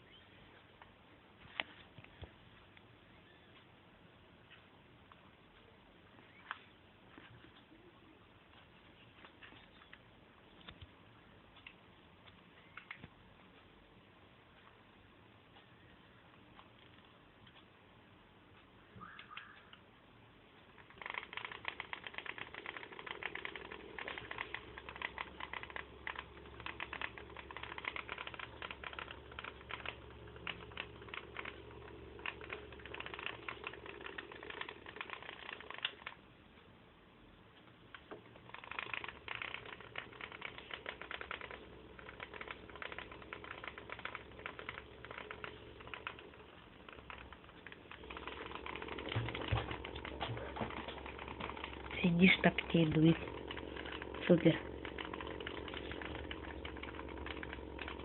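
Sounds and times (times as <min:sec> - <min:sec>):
electric fan clattering rattle: 0:20.7 - 0:36.2, 0:38.0 - 0:58.0
low motor hum: 0:22.0 - 0:35.4, 0:38.8 - 0:58.0.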